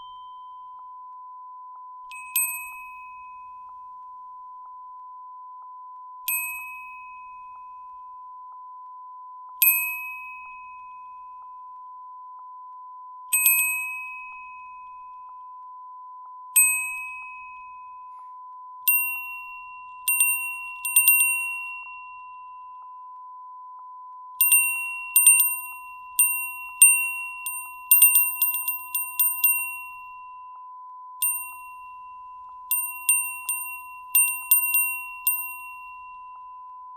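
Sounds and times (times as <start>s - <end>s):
wind chime ringing: 18.9s - 22.0s, 24.4s - 30.3s, 31.2s - 36.5s.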